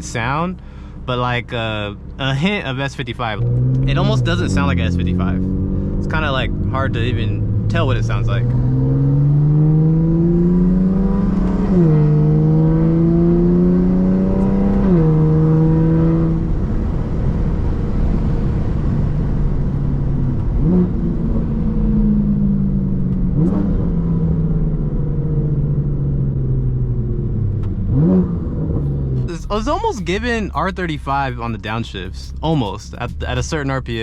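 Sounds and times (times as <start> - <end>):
car engine accelerating hard: 0.0 - 34.0
engine rev blips: 2.4 - 16.6.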